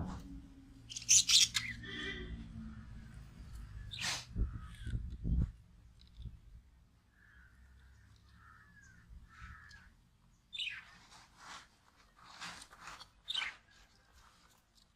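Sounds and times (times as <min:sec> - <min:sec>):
harsh shrill bird calls: 0:00.8 - 0:02.4, 0:03.8 - 0:05.0, 0:10.5 - 0:11.0
lovebirds squeaky chatter: 0:00.9 - 0:02.3.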